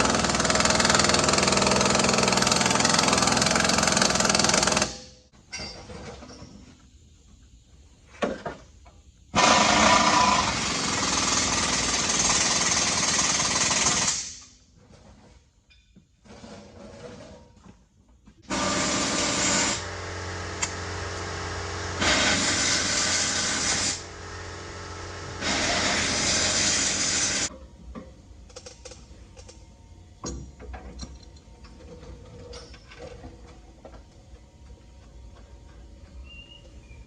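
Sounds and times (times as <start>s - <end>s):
air impact wrench: 0.0s - 5.2s, 9.4s - 14.6s, 18.5s - 27.5s.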